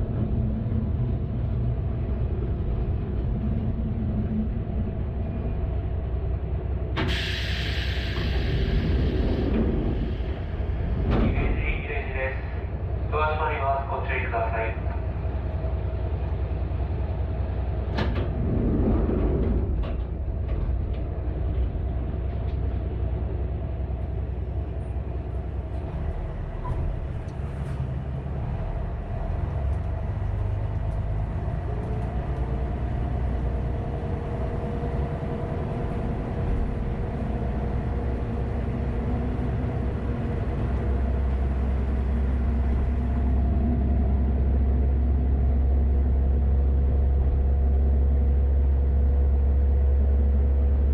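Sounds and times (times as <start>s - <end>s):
railcar engine drone: 0.0s - 50.9s.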